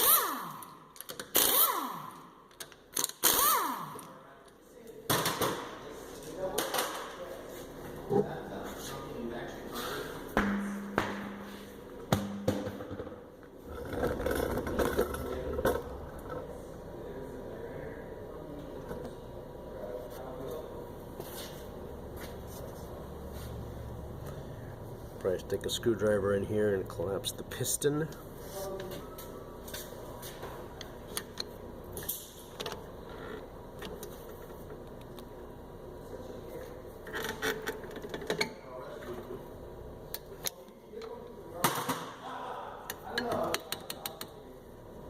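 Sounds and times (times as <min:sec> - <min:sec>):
steady low background noise: 0:03.9 - 0:45.0
knocks: 0:10.4 - 0:11.5
scraping and rumbling: 0:13.6 - 0:16.6.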